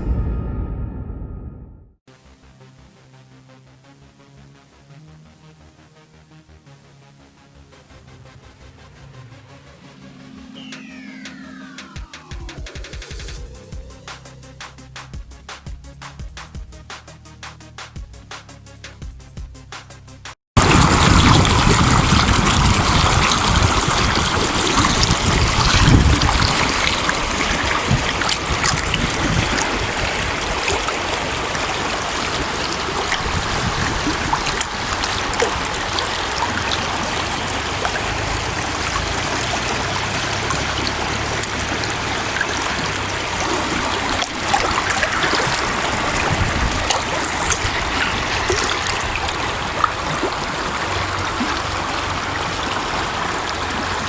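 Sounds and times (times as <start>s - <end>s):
stream rushing over stones: 20.6s - 54.0s.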